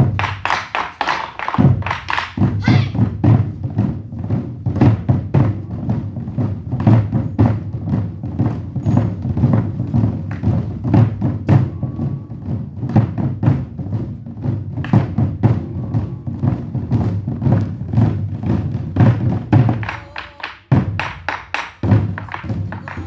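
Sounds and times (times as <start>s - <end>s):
drum ensemble fast rhythm: 0.0s - 23.0s.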